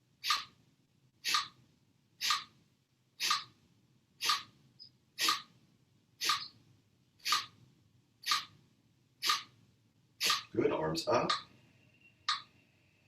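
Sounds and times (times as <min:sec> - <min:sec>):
forceful exhalations through nose: 0:03.2 - 0:03.5, 0:05.2 - 0:05.5, 0:07.2 - 0:07.6.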